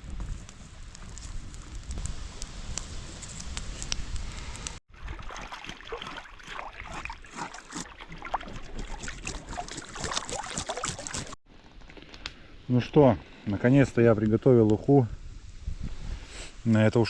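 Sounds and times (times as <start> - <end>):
wind rumble on microphone: 0.0 - 4.8, 13.8 - 16.7
water gurgling and bubbling: 4.9 - 11.4.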